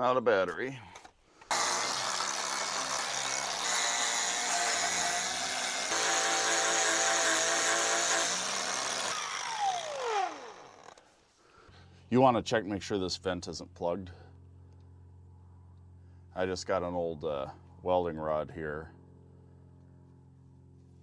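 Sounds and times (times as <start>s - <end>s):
cordless power tool motor whining: 1.5s - 11.0s.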